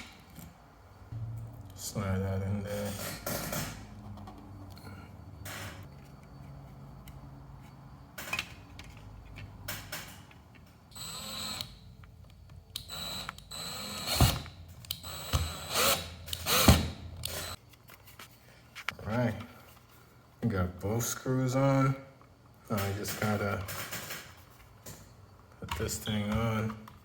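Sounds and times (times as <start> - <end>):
power drill whining: 10.9 - 11.8, 12.8 - 17.6.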